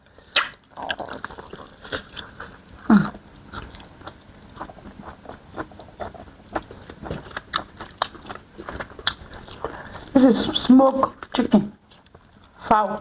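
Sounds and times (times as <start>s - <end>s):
wet chewing and biting: 0.2s - 10.2s
mouth smacks and clicks: 0.3s - 2.3s.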